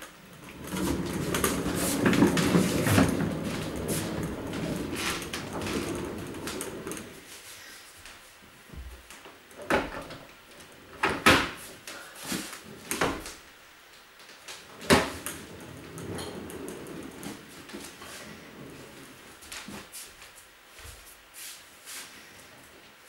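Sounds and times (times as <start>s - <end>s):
boxes shuffling and scraping: 0.5s - 8.4s, 11.5s - 13.0s.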